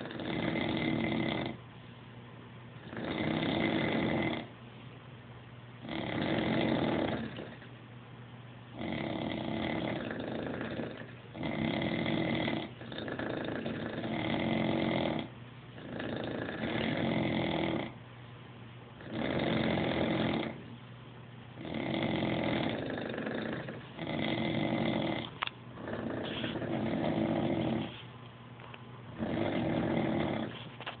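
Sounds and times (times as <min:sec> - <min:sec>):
people snoring: 0:00.0 - 0:01.6, 0:02.9 - 0:04.5, 0:05.9 - 0:07.6, 0:08.8 - 0:17.9, 0:19.0 - 0:20.6, 0:21.6 - 0:27.9, 0:29.2 - 0:30.5.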